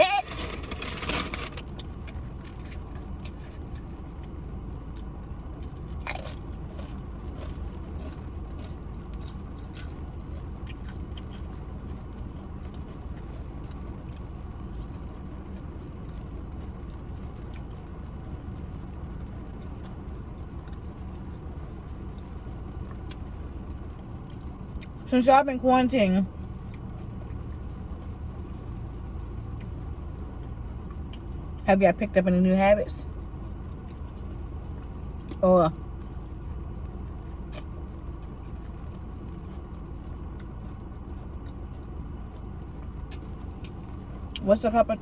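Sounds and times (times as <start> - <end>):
person crunching chips: 0.0 - 4.2, 5.0 - 11.6
low background rumble: 0.0 - 45.0.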